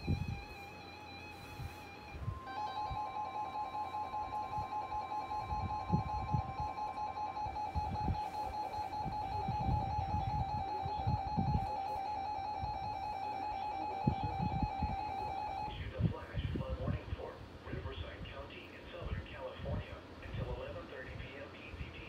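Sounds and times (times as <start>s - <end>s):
music: 0.0s - 15.7s
rapid alarm beeping: 0.0s - 15.8s
steady attention tone: 0.0s - 15.9s.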